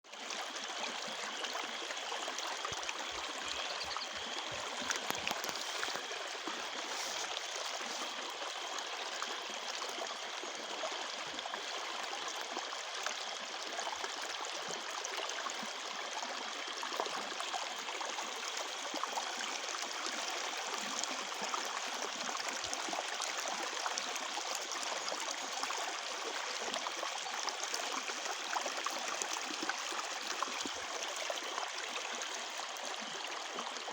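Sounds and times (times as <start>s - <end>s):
water rushing and gurgling: 1.8s - 9.6s.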